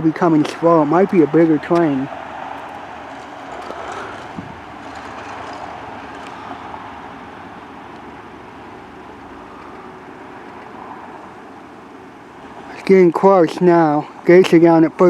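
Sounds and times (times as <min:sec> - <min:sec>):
distant vehicle hum: 0:00.0 - 0:15.0.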